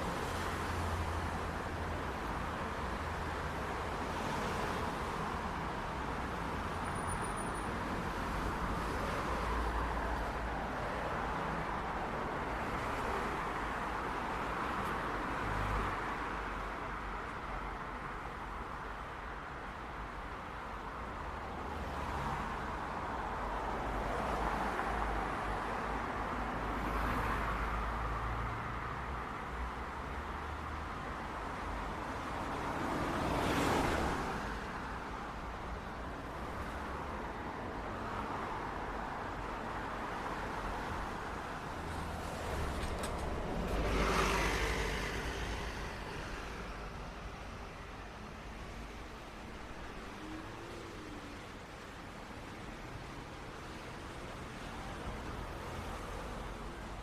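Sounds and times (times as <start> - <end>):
traffic passing: 0.0 - 57.0.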